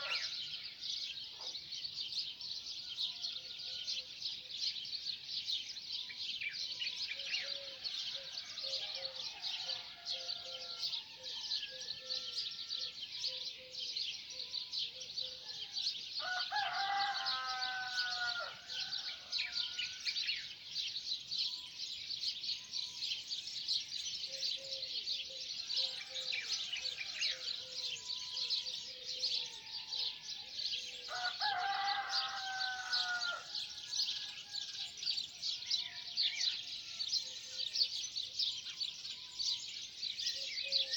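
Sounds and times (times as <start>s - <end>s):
small birds chirping: 0.0s - 40.9s
rooster crowing: 8.1s - 12.9s, 16.2s - 20.0s, 31.0s - 34.5s.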